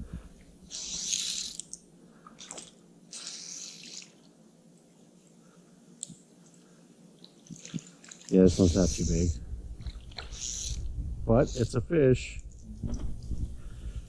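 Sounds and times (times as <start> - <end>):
hissing water splashes: 2.4 - 4.2, 7.4 - 10.9.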